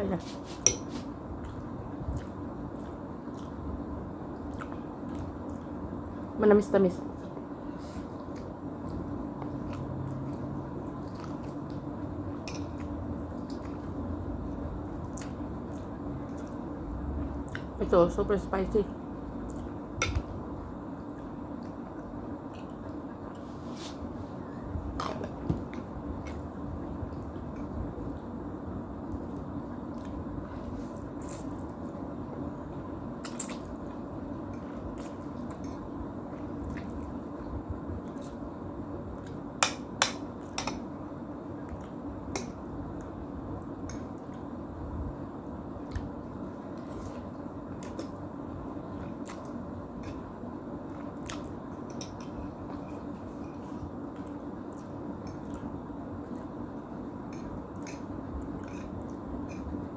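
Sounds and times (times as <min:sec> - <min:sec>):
low background hum: 0:00.0 - 0:59.9
wet chewing of noodles: 0:00.5 - 0:06.3, 0:07.2 - 0:17.7, 0:32.8 - 0:38.5, 0:45.4 - 0:59.9.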